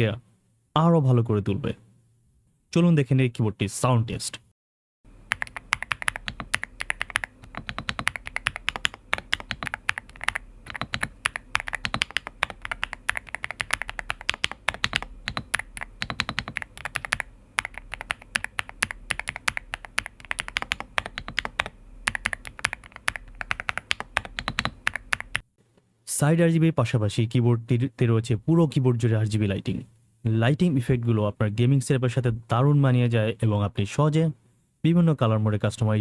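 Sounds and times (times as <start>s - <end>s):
fast mechanical keyboard typing: 5.3s - 25.4s.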